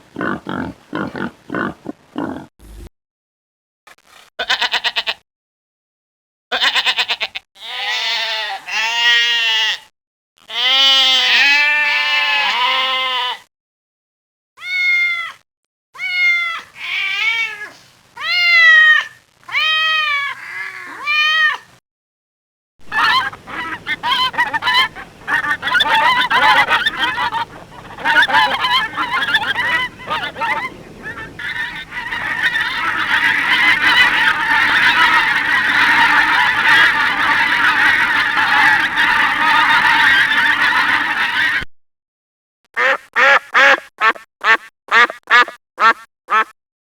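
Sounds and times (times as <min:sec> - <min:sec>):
wavering bleats: 0:00.0 - 0:02.5, 0:22.9 - 0:41.6
single honking calls: 0:22.9 - 0:41.0
flock of geese honking: 0:22.9 - 0:41.6.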